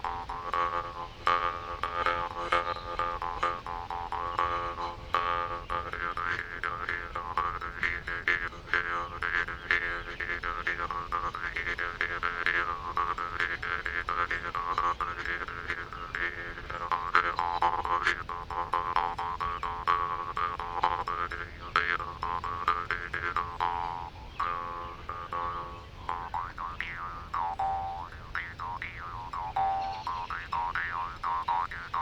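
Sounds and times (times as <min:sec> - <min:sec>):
jaw harp twanging: 0:23.4 - 0:32.0.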